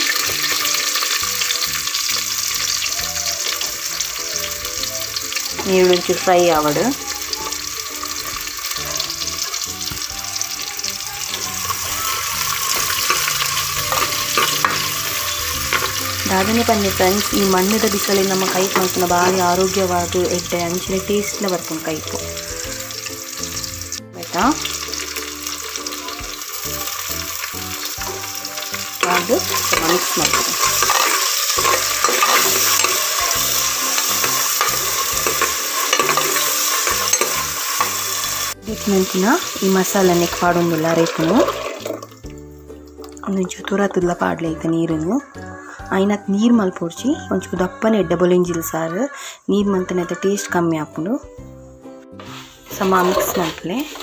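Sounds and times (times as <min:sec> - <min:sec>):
spoon scraping a pan: 0:00.0 - 0:23.7, 0:27.6 - 0:42.1, 0:52.2 - 0:54.0
vegetables sizzling in hot oil: 0:00.0 - 0:45.1, 0:52.1 - 0:54.0
background music: 0:00.0 - 0:54.0.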